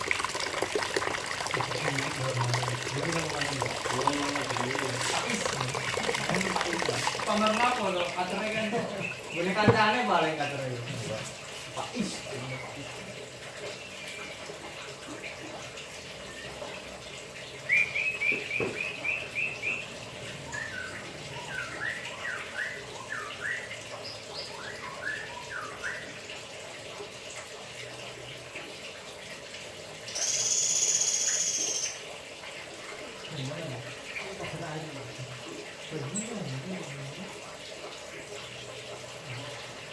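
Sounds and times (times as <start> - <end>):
water splashing: 0.0 - 16.0
bird singing: 6.8 - 9.8, 17.7 - 19.9, 30.1 - 32.0.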